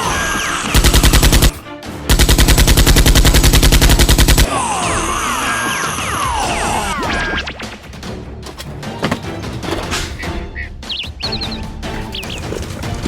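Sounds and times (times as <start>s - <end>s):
background music: 0.0s - 13.0s
machine-gun fire: 0.7s - 4.5s.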